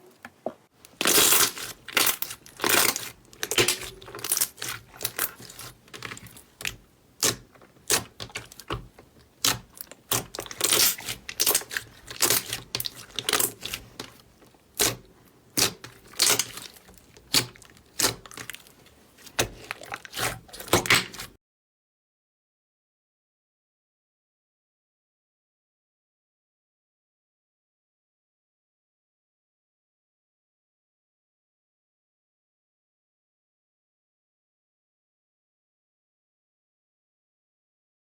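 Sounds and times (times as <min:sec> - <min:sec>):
slime squeezed by hand: 0:15.6 - 0:21.3.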